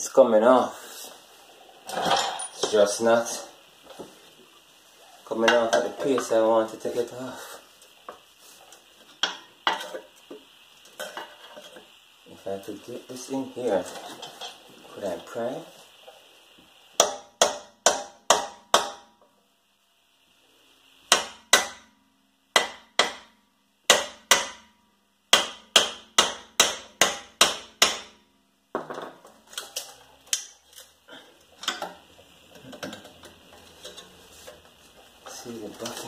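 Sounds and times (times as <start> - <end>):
hammer striking steel: 17.0 - 19.1, 21.1 - 21.9, 22.6 - 23.3, 23.9 - 24.7, 25.3 - 28.2.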